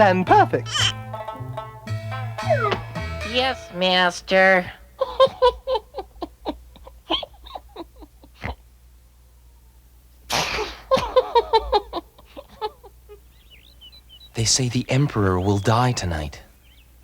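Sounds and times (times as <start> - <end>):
cartoon character chuckling: 5.0 - 8.6, 10.4 - 13.2
loud sneeze: 10.3 - 11.2.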